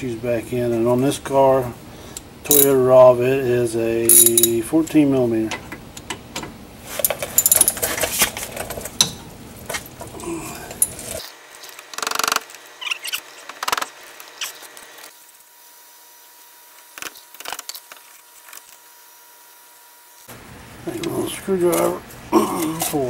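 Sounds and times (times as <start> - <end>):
ratchet wrench clicking: 2.5 - 2.7, 4.1 - 4.5
metal clinks and rattles: 2.5 - 2.8, 4.1 - 4.6, 7.0 - 8.8, 10.7 - 11.2
tools clanking: 2.5 - 2.8, 4.1 - 4.7, 5.5 - 11.2.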